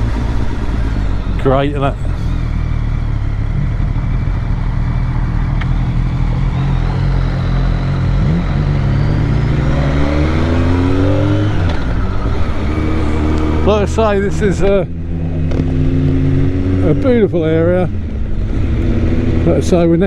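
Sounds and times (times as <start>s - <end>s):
motorcycle engine accelerating: 0.0s - 20.0s.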